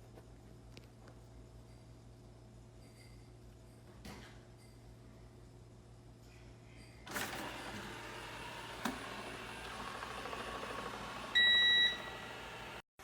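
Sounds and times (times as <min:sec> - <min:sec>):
robot vacuum whirring: 0:07.1 - 0:12.8
short electronic beep: 0:11.4 - 0:12.2.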